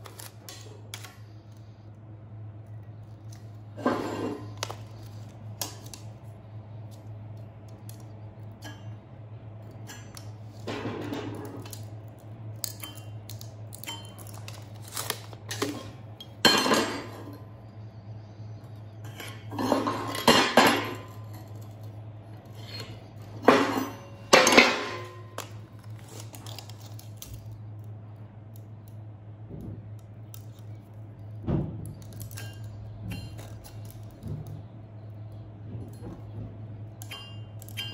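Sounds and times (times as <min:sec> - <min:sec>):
steady low hum: 0:00.0 - 0:37.9
steel parts clanking and scraping: 0:03.8 - 0:04.8.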